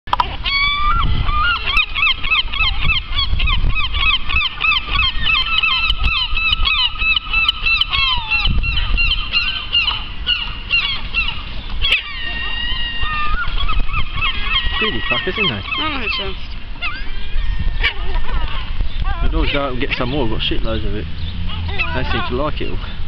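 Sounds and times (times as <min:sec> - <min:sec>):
gulls calling: 0:00.1 - 0:23.0.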